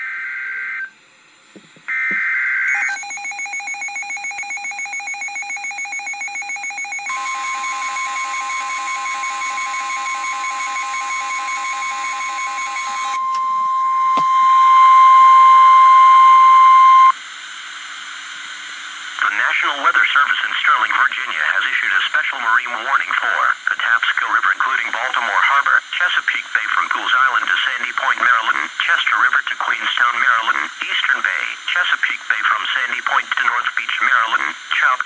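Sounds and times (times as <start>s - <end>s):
steady high warning tone: 1.8s - 22.1s
rapidly pulsing alarm tone: 1.9s - 17.1s.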